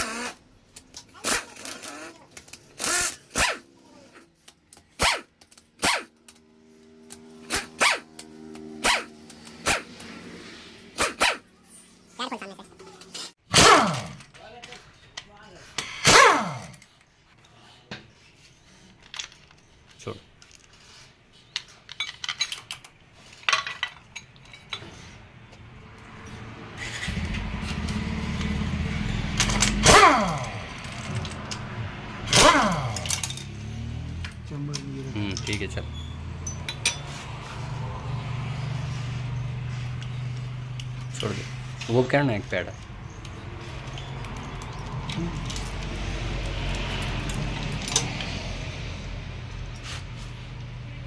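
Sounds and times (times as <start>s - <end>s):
vehicle engine running: 25.5s - 51.0s
metal tool clinks: 36.4s - 37.1s.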